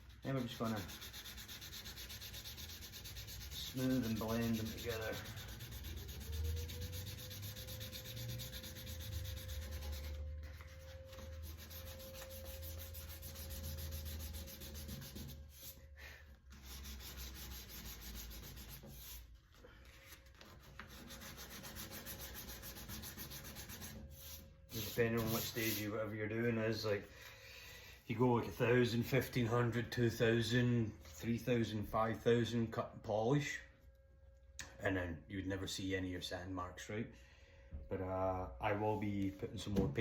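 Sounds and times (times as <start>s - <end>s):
sandpaper sanding: 0.0s - 15.8s, 16.5s - 19.3s, 20.4s - 26.0s.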